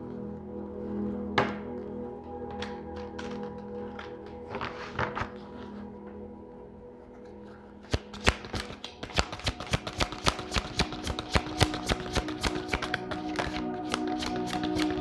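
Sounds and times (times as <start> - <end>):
faint background music: 0.0 - 15.0
cards being shuffled: 2.5 - 5.9, 7.8 - 15.0.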